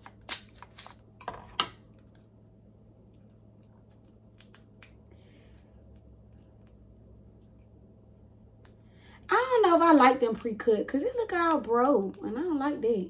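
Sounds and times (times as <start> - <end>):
crab shells cracking: 3.8 - 7.7.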